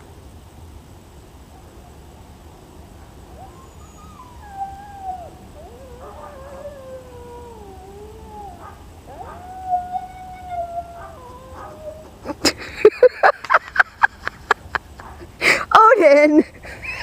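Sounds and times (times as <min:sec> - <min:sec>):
animal whining cries: 0:03.4 - 0:12.4.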